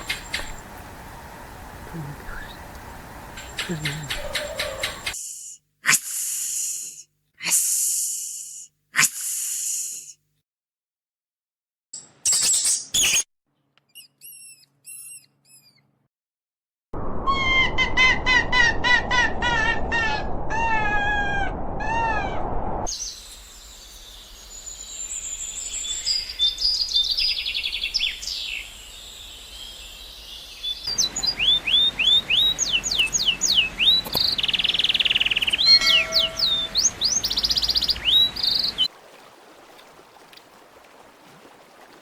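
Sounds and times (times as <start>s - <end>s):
birds calling: 0.0s - 5.2s, 24.6s - 38.9s
background hiss: 0.0s - 7.0s
rising whistled bird notes: 22.8s - 38.9s.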